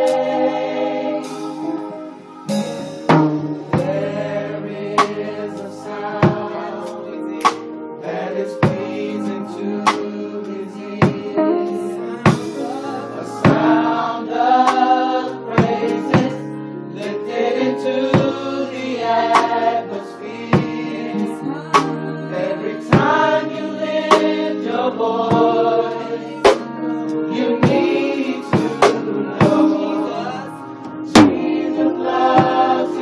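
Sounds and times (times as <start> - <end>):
gospel choir singing with band: 0.0 - 33.0
sharp drum hits: 2.5 - 4.0, 31.2 - 31.6.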